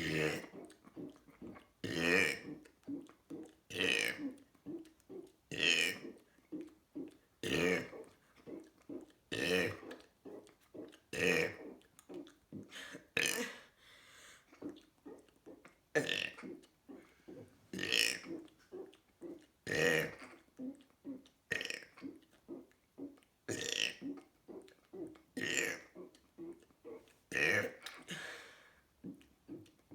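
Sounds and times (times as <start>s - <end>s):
person burping loudly: 0.0s - 1.2s, 13.2s - 13.7s, 19.7s - 20.2s.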